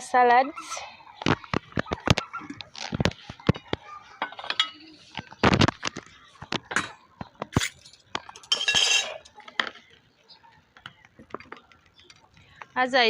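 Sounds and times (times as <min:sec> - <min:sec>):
dishes and utensils clinking: 0:00.6 - 0:09.8.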